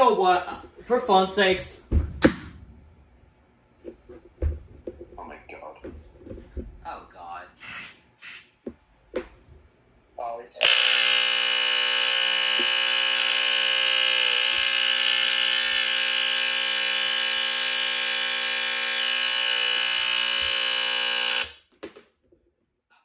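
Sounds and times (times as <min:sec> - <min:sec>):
smoke alarm buzzing: 0:10.6 - 0:21.7.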